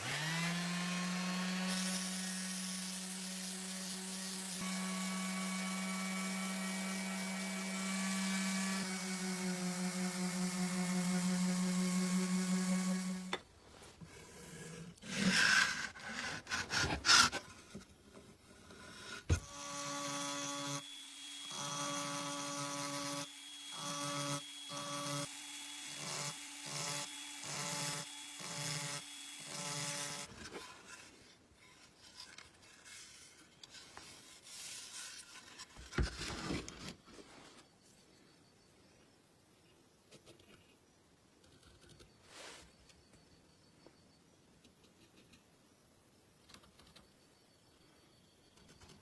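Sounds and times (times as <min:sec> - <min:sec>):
small electric motor humming: 0:00.0 - 0:13.4, 0:19.2 - 0:31.0
rubbing and scraping: 0:13.7 - 0:19.4, 0:30.3 - 0:37.7.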